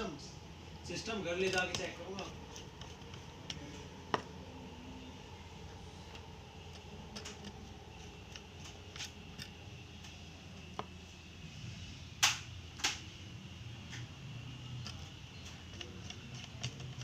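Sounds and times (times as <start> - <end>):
steady low hum: 0.0 - 17.0
sharp loud clicks: 12.2 - 13.0.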